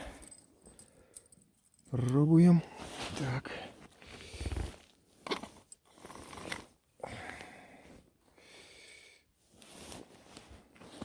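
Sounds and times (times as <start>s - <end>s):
person breathing softly: 0.0s - 1.4s, 7.0s - 10.1s.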